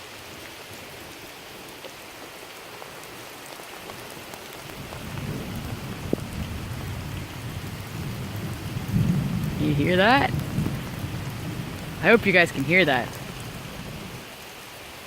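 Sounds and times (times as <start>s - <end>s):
steady rain falling: 0.0s - 15.0s
thunder rumbling: 4.7s - 14.3s.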